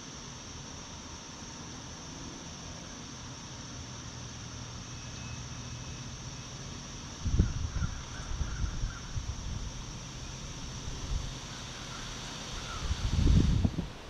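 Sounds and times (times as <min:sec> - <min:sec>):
wind buffeting microphone: 0:07.2 - 0:10.0, 0:12.6 - 0:14.0
faint bird calls: 0:07.3 - 0:09.3, 0:11.4 - 0:13.1.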